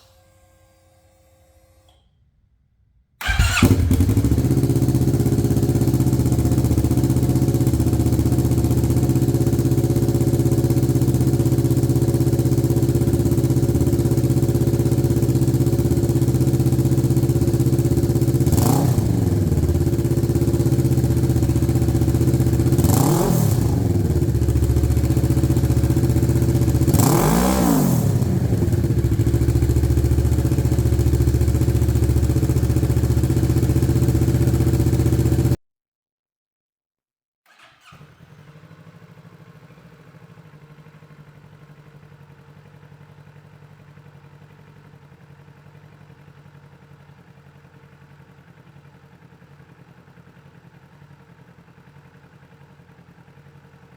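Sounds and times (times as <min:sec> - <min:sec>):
motorcycle engine idling: 0:03.2 - 0:35.6, 0:37.5 - 0:53.9
motorcycle engine revs: 0:03.2 - 0:35.6, 0:37.5 - 0:41.6.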